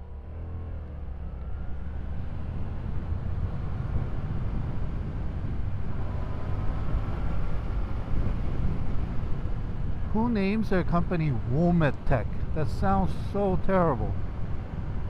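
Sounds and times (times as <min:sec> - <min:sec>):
wind rumble on microphone: 0:00.7 - 0:15.0.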